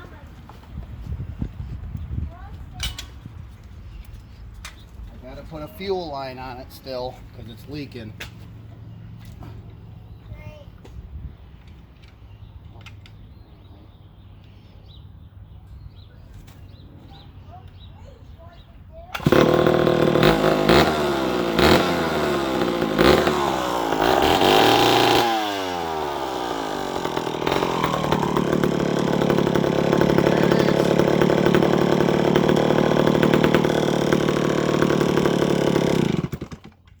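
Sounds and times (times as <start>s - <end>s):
chainsaw engine revving: 19.1s - 36.9s.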